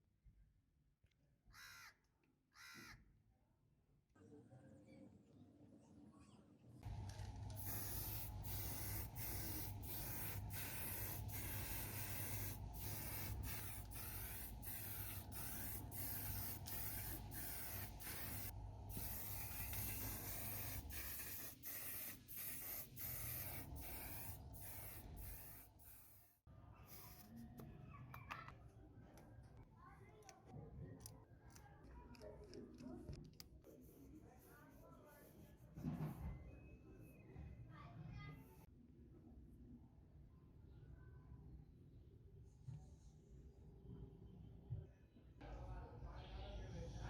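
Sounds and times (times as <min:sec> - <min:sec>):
paint spraying hiss: 0:07.5 - 0:26.3.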